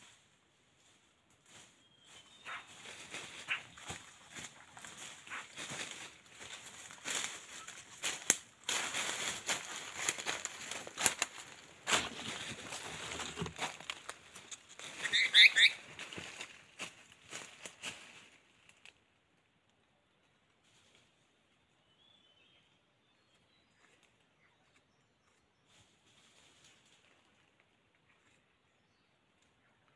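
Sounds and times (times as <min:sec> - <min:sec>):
bird call: 0:15.0 - 0:15.8.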